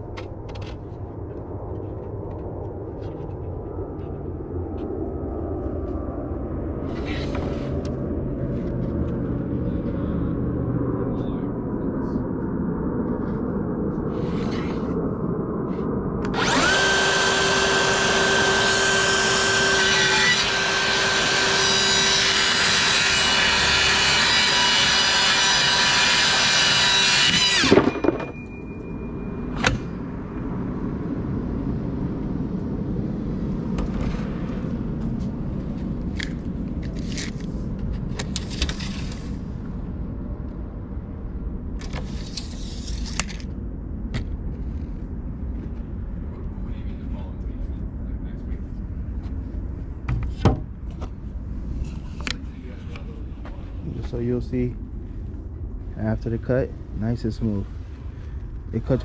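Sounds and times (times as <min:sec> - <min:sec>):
saw spinning down: 0:16.2 - 0:28.8
track saw whining: 0:16.2 - 0:28.8.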